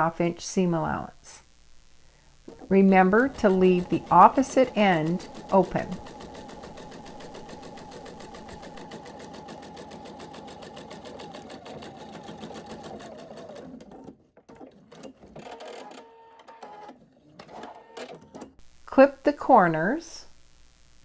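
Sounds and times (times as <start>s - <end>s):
sewing machine stitching: 2.6s - 18.5s.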